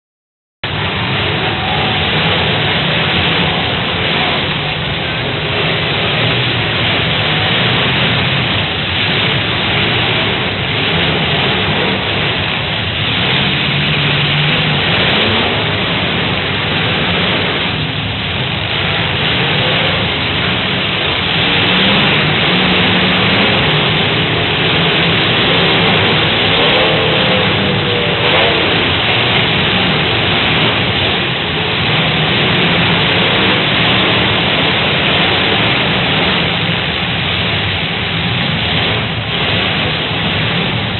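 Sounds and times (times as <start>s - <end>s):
car engines revving: 0.6s - 40.9s.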